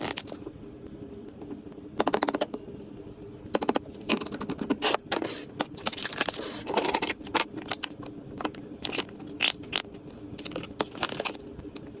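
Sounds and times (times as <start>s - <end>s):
faint steady hum: 0.0s - 12.0s
packaging crinkling: 8.8s - 11.5s.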